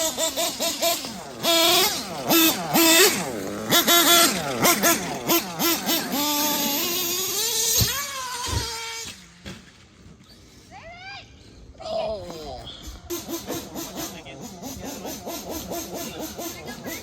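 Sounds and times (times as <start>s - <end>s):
electric motor whining: 0.0s - 9.3s.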